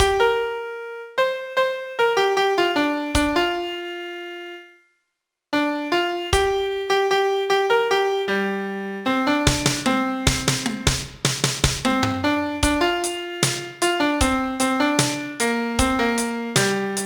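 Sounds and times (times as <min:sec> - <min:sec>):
low piano chords: 0:00.0 - 0:04.5, 0:11.9 - 0:17.0
piano melody: 0:00.0 - 0:04.7, 0:05.6 - 0:17.0.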